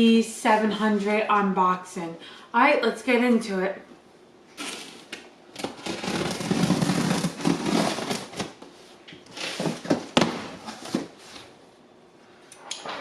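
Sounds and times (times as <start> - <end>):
packaging crackling and rustling: 5.6 - 8.6.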